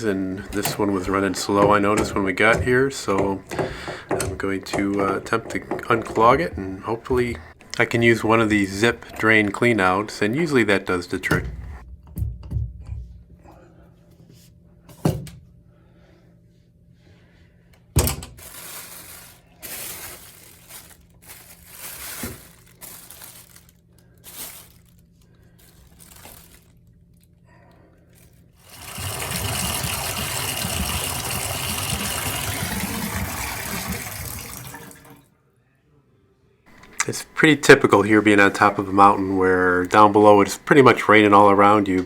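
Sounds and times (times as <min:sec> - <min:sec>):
plastic strip scraping in drain: 0:00.0 - 0:10.2
water running down drain: 0:00.0 - 0:11.8, 0:28.6 - 0:35.2.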